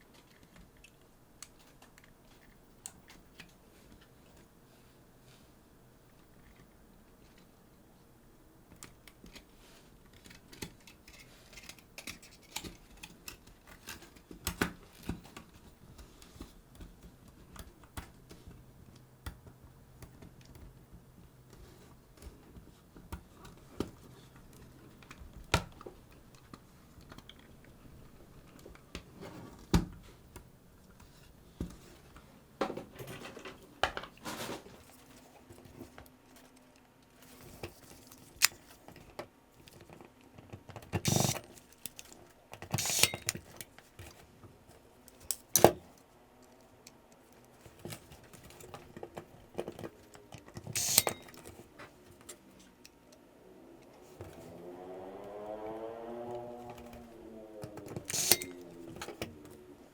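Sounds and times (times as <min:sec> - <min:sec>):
small parts clicking and tapping: 0:08.7 - 0:34.2, 0:35.0 - 0:44.2, 0:45.0 - 0:53.2, 0:57.6 - 0:59.6.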